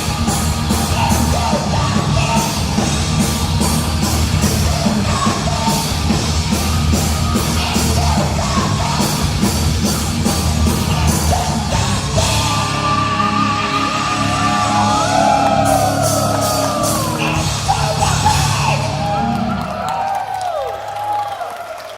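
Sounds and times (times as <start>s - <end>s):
heavy metal band playing: 0.0s - 20.2s
shouted vocals: 10.8s - 21.8s
wailing high guitar notes: 12.3s - 20.0s.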